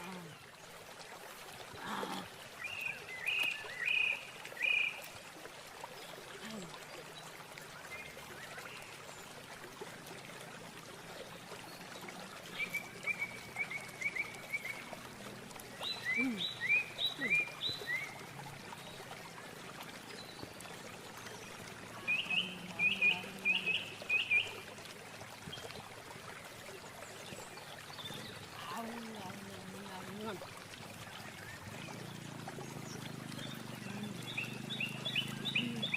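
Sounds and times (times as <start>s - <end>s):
running water: 0.0s - 35.9s
songbird singing: 1.9s - 5.1s, 11.1s - 19.2s, 20.0s - 24.7s, 31.2s - 35.9s.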